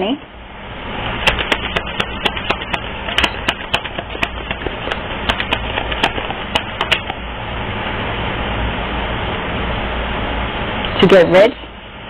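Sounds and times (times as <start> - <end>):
steady low hum: 0.0 - 12.0
cards being shuffled: 1.2 - 7.2.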